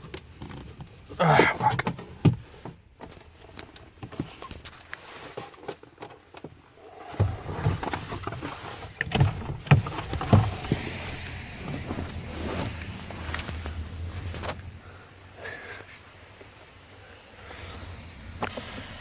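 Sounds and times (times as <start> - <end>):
thumps: 7.2 - 14.8.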